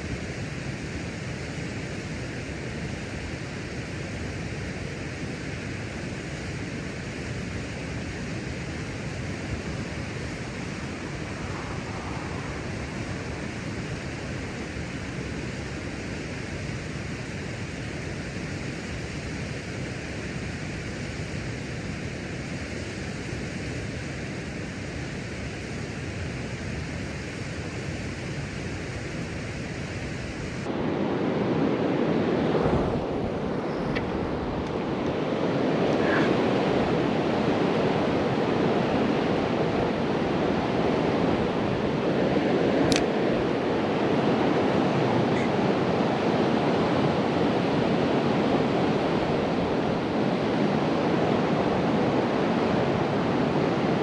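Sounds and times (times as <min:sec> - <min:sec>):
river water flowing: 0:02.8 - 0:30.6
sharp click: 0:42.9 - 0:43.1.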